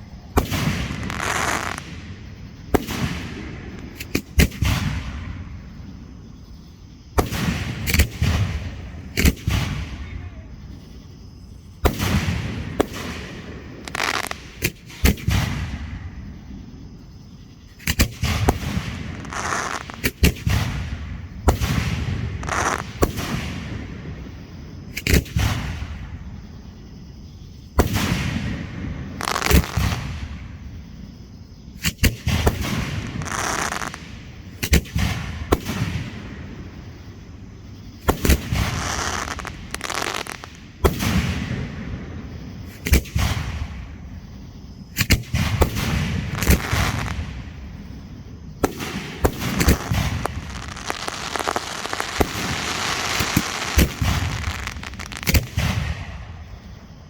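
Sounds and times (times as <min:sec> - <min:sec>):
firework bangs: 0:00.0 - 0:11.2, 0:11.8 - 0:57.0
firework crackling: 0:00.4 - 0:05.6, 0:11.9 - 0:15.9, 0:17.8 - 0:23.7, 0:27.8 - 0:30.4, 0:31.8 - 0:41.8, 0:45.0 - 0:47.7, 0:48.6 - 0:56.1.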